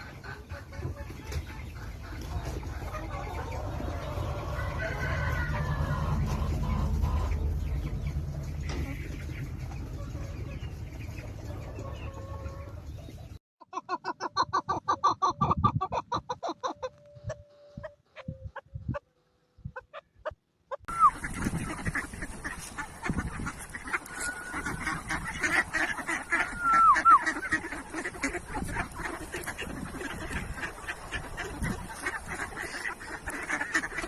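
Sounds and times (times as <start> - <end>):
whistled bird notes: 20.9 - 21.2, 26.4 - 27.2
waterfowl honking calls: 20.9 - 34.0.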